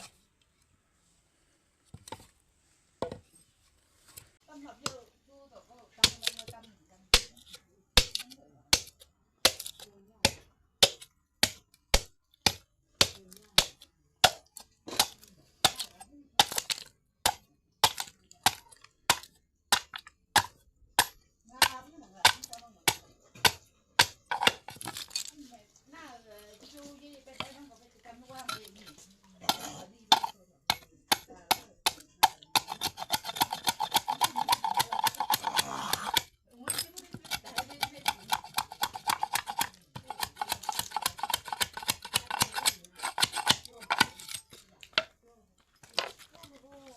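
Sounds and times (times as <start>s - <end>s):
blade chopping bamboo: 6.0s - 25.1s, 29.4s - 44.4s
blade striking bamboo: 37.2s - 44.4s.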